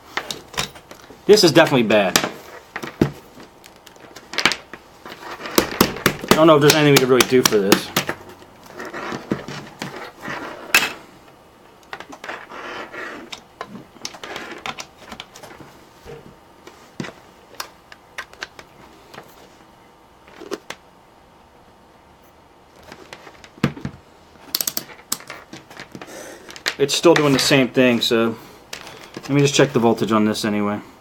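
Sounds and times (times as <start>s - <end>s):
cables rustling: 0.0s - 20.8s, 22.7s - 30.0s.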